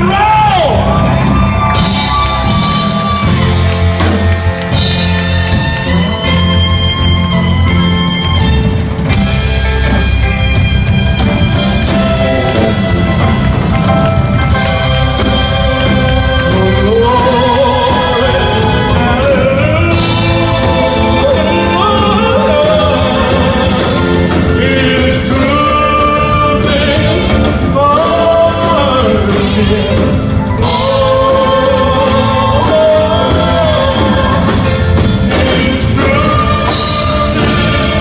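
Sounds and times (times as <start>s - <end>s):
live band music: 0.0s - 38.0s
person singing: 11.4s - 38.0s.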